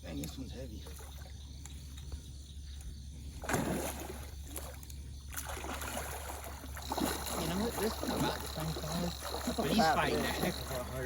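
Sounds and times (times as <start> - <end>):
fish thrashing in water: 3.4 - 11.0.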